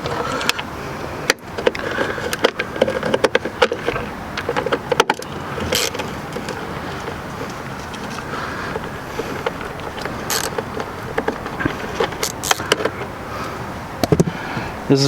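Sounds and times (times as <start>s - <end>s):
ratchet clicking: 9.5s - 11.4s.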